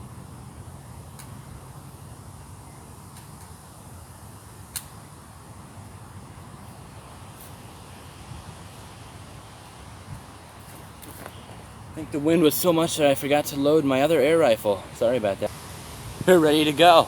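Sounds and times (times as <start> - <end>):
sharp click: 4.7 - 5.0
wind buffeting microphone: 7.8 - 13.4, 15.2 - 17.0.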